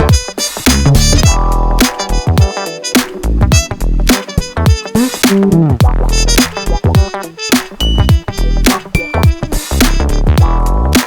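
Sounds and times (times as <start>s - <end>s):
snare and hi-hat hits: 0.0s - 11.0s
deep kick drum: 0.8s - 1.4s, 4.7s - 6.1s, 10.4s - 10.6s.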